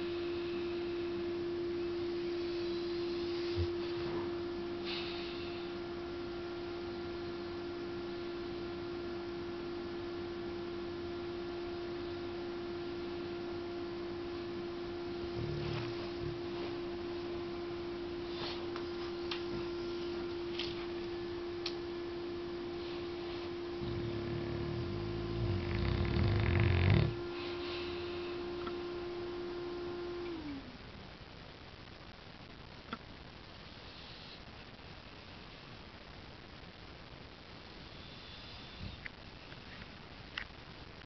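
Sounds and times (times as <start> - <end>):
steady hum: 0.0 - 41.0
dog snoring: 15.2 - 16.8, 23.4 - 28.0.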